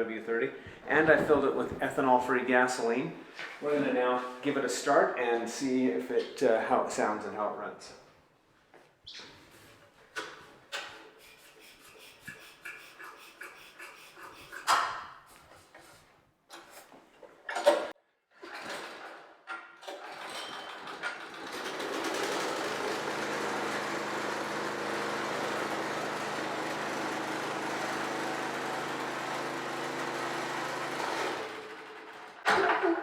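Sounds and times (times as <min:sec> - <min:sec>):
snowblower engine running: 0:21.2 - 0:32.4.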